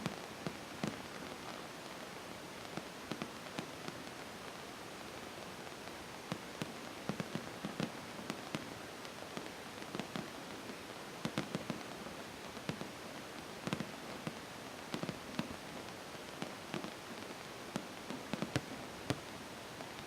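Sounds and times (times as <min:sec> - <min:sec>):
steady hiss: 0:00.0 - 0:20.0
fireworks bangs and cracks: 0:11.3 - 0:11.8, 0:13.6 - 0:15.6, 0:16.4 - 0:19.2.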